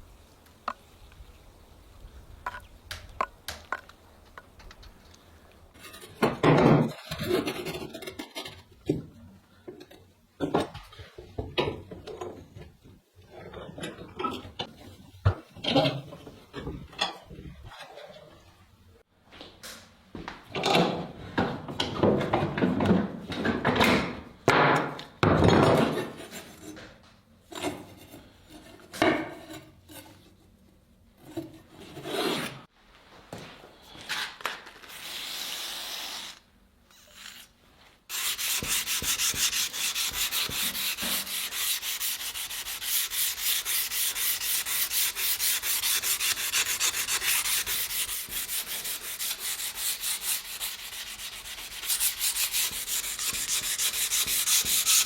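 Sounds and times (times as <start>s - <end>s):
tools knocking and clattering: 20.5s - 26.2s
hand sanding strokes: 38.1s - 55.0s.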